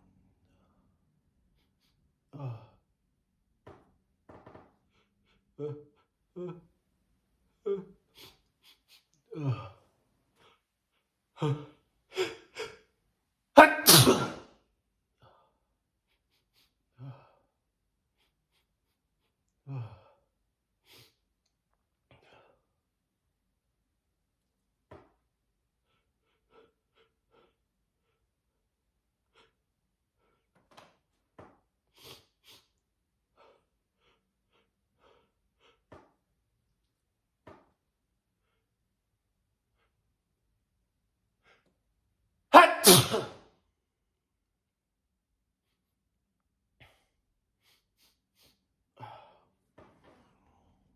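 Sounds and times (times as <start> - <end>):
person sniffing: 13.6 - 14.4, 42.6 - 43.4
person sneezing: 13.6 - 14.5, 42.6 - 43.4
person gasping breaths: 46.8 - 49.5.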